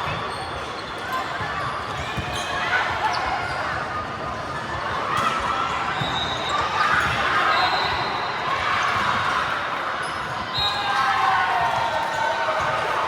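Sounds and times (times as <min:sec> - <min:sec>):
echoing hall clatter and murmur: 0:00.0 - 0:13.0.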